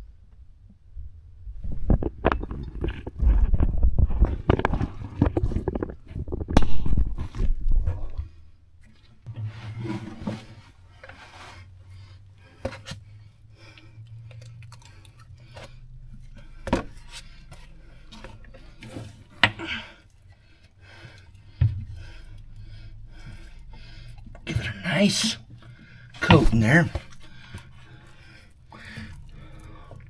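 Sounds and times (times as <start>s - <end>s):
rubbing and scraping: 1.6s - 30.0s
steady low hum: 6.6s - 30.0s.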